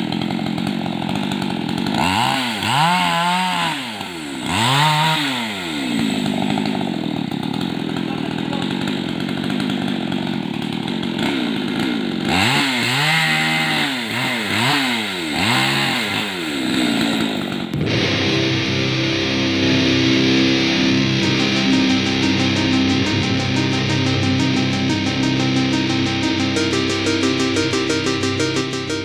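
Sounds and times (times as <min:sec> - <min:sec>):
chainsaw engine revving: 0:00.0 - 0:18.4.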